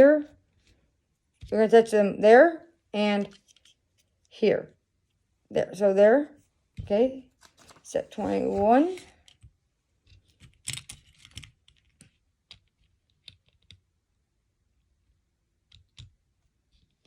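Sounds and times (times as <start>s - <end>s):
plastic pieces clicking and rattling: 10.1s - 13.8s.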